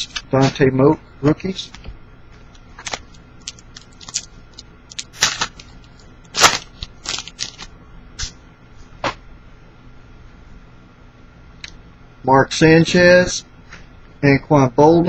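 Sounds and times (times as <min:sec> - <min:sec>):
trading cards and wrappers rustling: 0:02.8 - 0:07.7.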